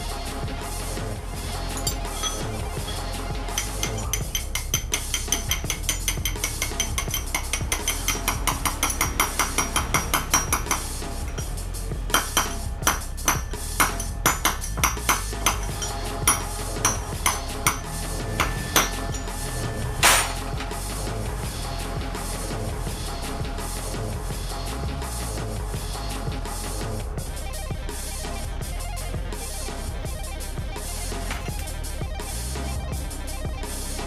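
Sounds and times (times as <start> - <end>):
background music: 0.0 - 34.0
hammer tapping on metal: 3.6 - 11.5, 12.1 - 19.4.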